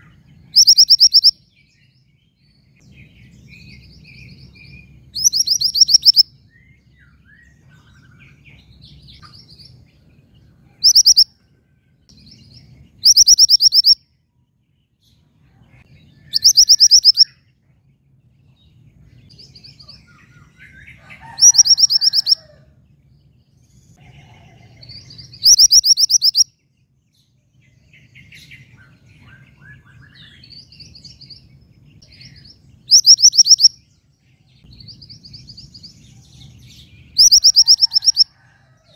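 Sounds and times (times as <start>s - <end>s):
soft bird twittering: 0.0s - 11.5s, 12.2s - 22.6s, 23.6s - 38.7s
songbird calling rapid high notes: 0.6s - 1.3s, 5.2s - 6.2s, 13.1s - 14.0s, 25.4s - 26.4s, 32.9s - 33.7s.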